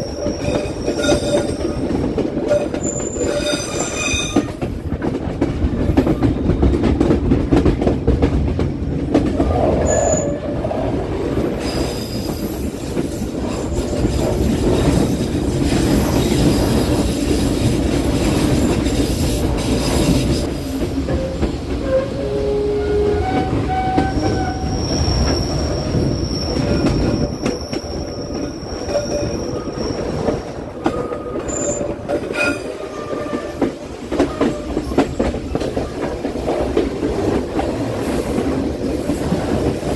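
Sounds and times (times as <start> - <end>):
train wheels squealing: 0.0 - 4.6, 9.5 - 17.7, 18.4 - 35.3
train carriages rumbling and rattling: 0.0 - 39.9.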